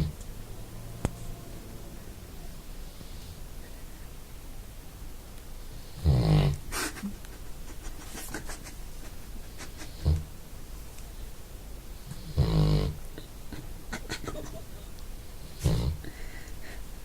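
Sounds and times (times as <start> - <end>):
dog snoring: 5.7 - 6.6, 12.0 - 13.0, 15.4 - 16.1.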